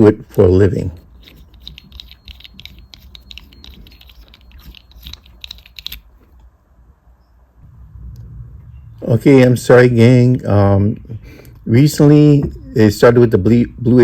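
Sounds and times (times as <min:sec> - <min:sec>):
small tool clicks and ticks: 0:01.1 - 0:06.1.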